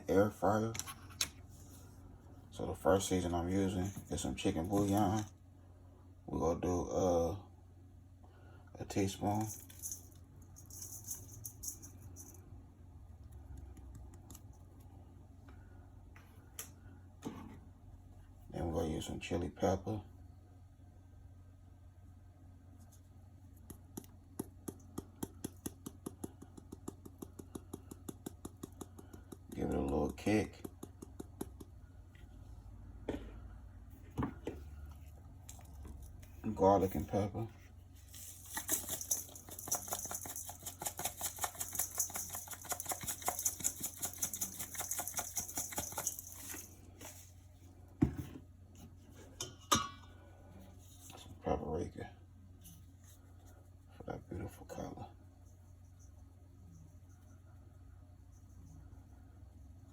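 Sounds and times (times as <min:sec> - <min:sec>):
seasoning shaker ticks: 0:38.5 - 0:46.6.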